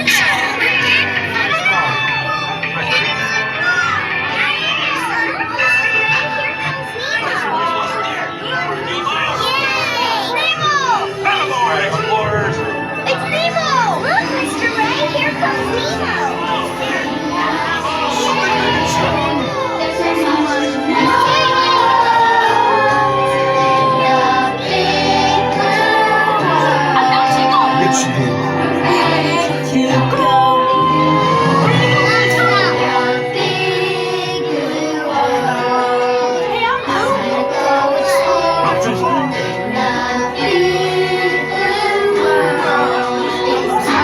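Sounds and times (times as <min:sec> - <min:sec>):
choir singing held notes: 0:00.0 - 0:44.0
musical backing: 0:00.0 - 0:44.0.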